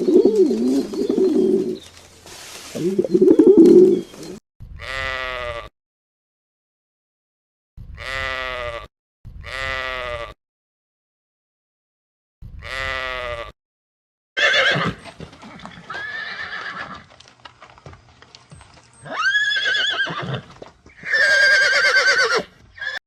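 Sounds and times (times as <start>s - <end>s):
sheep bleat: 8.0s - 10.4s
horse whinnying: 14.4s - 17.1s, 19.0s - 23.0s.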